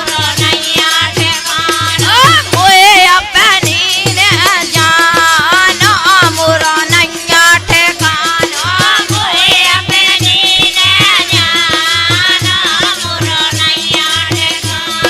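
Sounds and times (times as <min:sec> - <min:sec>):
steady drum beat: 0:00.0 - 0:15.0.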